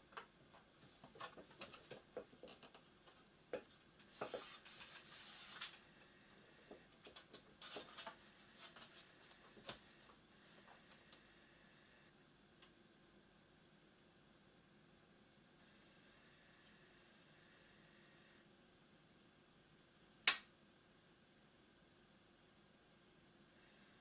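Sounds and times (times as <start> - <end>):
scraping rub: 4.1 - 5.8.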